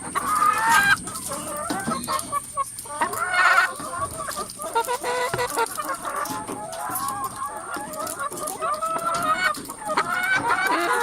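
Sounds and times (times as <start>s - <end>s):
hens clucking: 0.0s - 11.0s.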